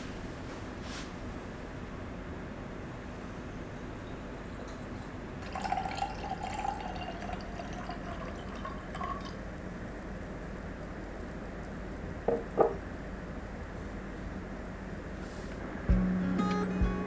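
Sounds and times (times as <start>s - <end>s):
low background hum: 0.0s - 17.0s
liquid pouring: 5.4s - 9.6s.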